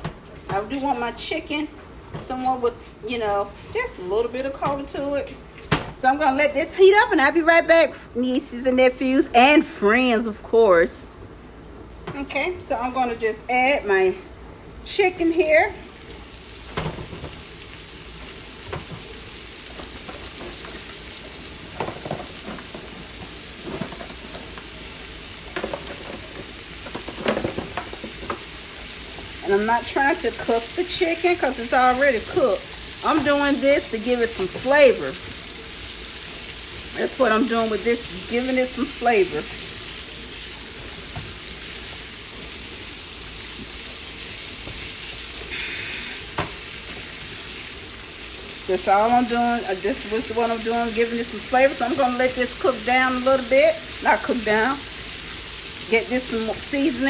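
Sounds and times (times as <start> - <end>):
chicken sizzling in oil: 15.4 - 57.0.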